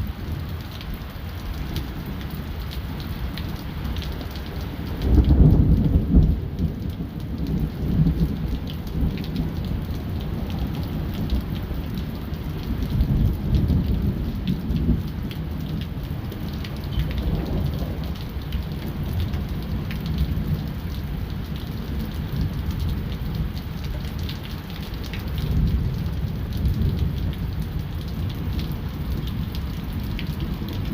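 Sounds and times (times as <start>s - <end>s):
heavy rain: 0.0s - 30.9s
rain drop ticks: 0.0s - 30.9s
rolling thunder: 5.0s - 11.9s, 12.7s - 24.1s.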